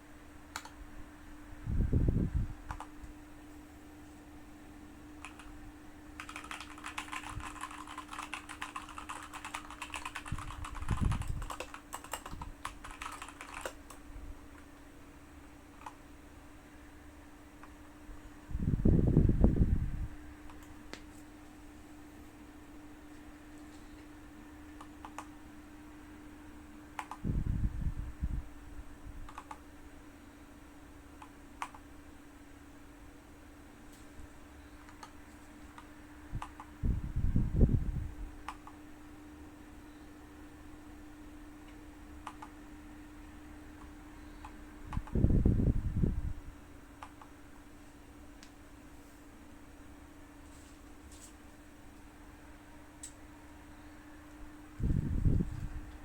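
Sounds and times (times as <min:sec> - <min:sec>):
steady low hum: 0:00.0 - 0:56.0
mechanical keyboard typing: 0:05.2 - 0:05.5, 0:06.2 - 0:14.0, 0:24.8 - 0:25.3, 0:27.0 - 0:27.2, 0:29.3 - 0:29.6, 0:31.2 - 0:31.8, 0:42.2 - 0:42.5
keyboard key clicks: 0:27.0 - 0:27.2.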